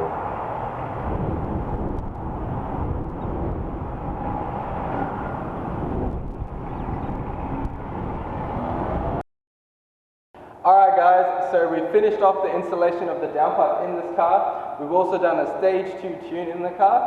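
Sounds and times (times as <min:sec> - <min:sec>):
road noise: 0:00.0 - 0:09.2.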